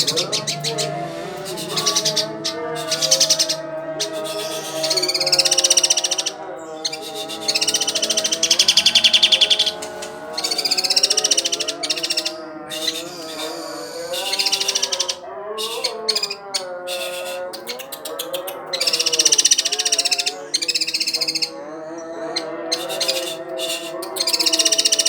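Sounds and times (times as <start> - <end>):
background music: 0.0 - 17.3
bulbul singing rapid notes: 0.0 - 21.6, 22.2 - 25.0.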